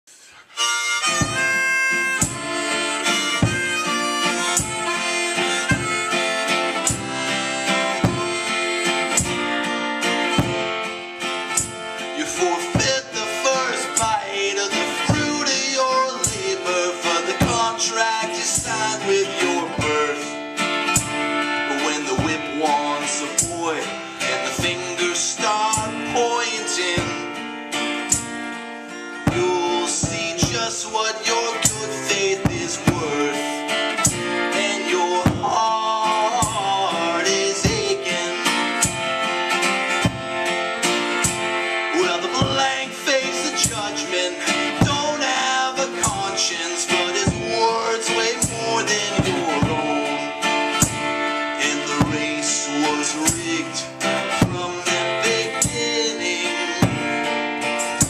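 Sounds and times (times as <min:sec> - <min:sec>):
acoustic guitar: 0:00.0 - 0:58.0
harmonica playing: 0:00.1 - 0:58.0
pitch-bending melody: 0:00.4 - 0:12.4
strong beat: 0:00.6 - 0:58.0.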